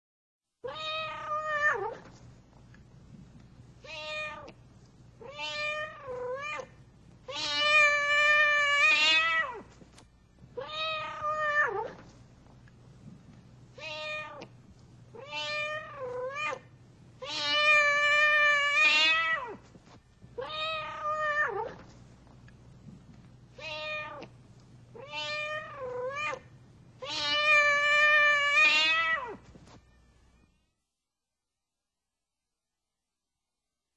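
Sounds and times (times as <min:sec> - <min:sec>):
cat meowing: 0:00.6 - 0:02.0, 0:03.8 - 0:04.6, 0:05.2 - 0:09.7, 0:10.6 - 0:12.0, 0:13.8 - 0:14.5, 0:15.2 - 0:19.6, 0:20.4 - 0:21.8, 0:23.6 - 0:24.3, 0:25.0 - 0:29.4.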